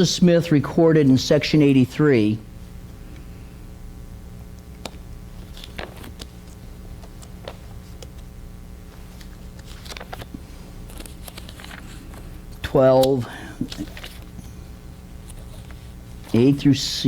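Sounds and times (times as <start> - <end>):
low electrical hum: 0.0 - 17.0
book pages rustling: 4.7 - 8.3, 8.9 - 16.6.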